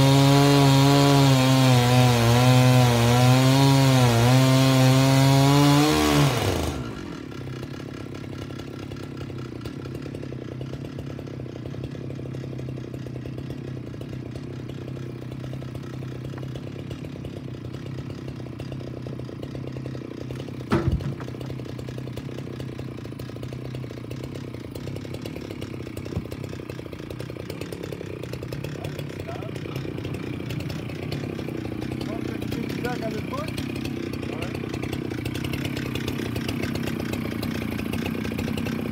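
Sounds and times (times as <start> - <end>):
chainsaw engine idling: 0.0 - 38.9.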